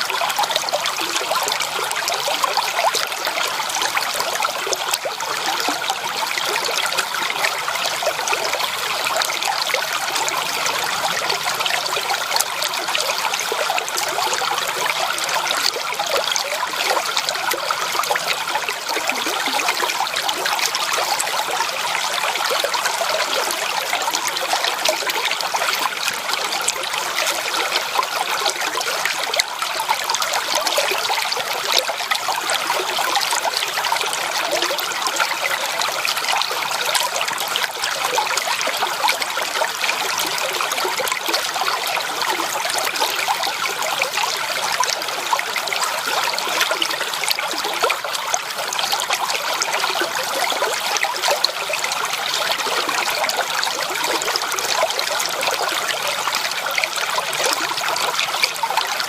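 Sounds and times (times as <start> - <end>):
creek water babbling over stones: 0.0 - 59.0.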